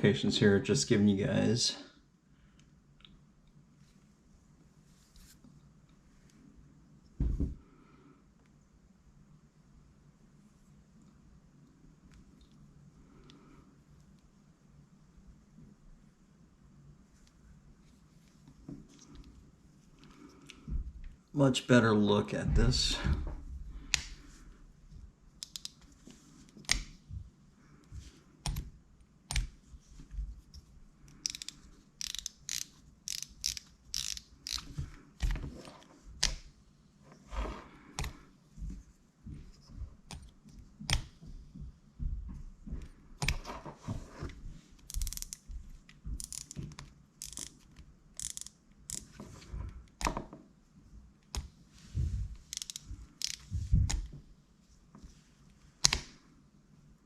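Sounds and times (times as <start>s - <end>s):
fishing reel clicking and ratcheting: 31.1s - 34.7s, 46.2s - 46.6s, 47.2s - 47.5s, 48.2s - 49.1s, 52.5s - 53.4s.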